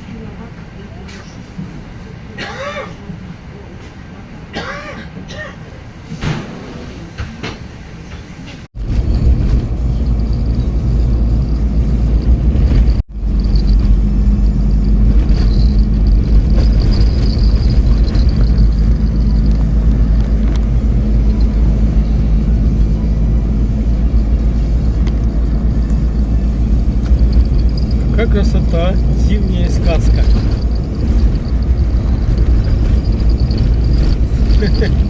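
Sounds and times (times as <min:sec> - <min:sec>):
vehicle engine low rumble: 0:06.8 - 0:35.0.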